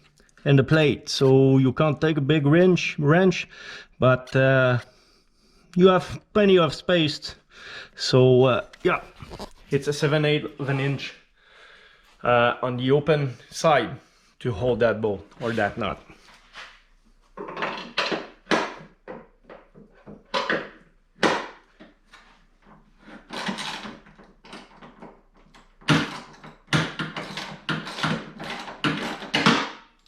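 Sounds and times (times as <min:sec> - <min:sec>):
hand tools clicking and clanking: 0:23.1 - 0:30.0.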